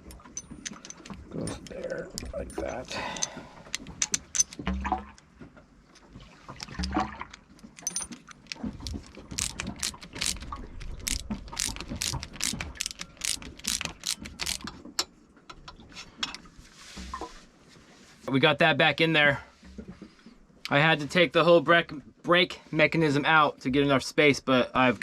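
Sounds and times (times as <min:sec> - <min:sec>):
metal parts knocking: 0:00.0 - 0:04.9, 0:06.6 - 0:14.7
ratchet wrench clicking: 0:03.2 - 0:04.6, 0:07.7 - 0:14.7.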